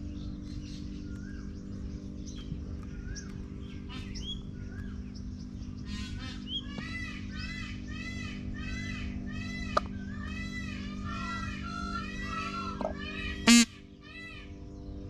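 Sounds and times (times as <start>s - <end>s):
birds chirping: 0.0s - 15.0s
harsh repeated bird calls: 0.0s - 15.0s.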